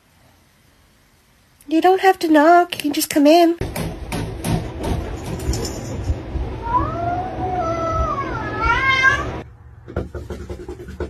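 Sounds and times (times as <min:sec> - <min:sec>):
cat meowing: 0:06.6 - 0:09.4.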